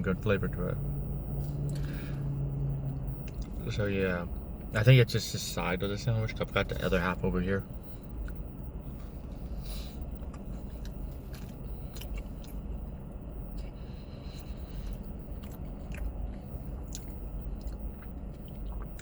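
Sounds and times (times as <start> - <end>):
steady low hum: 0.0 - 19.0
person chewing sandwich: 1.2 - 2.4, 3.2 - 3.6, 7.7 - 19.0
wet mouth clicks and smacks: 14.7 - 19.0.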